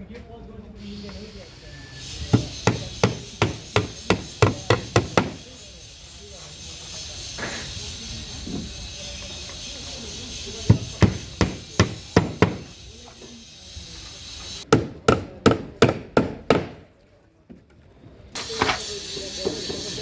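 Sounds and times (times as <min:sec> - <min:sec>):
hammer blows on wood: 0:02.0 - 0:05.6, 0:10.6 - 0:12.8.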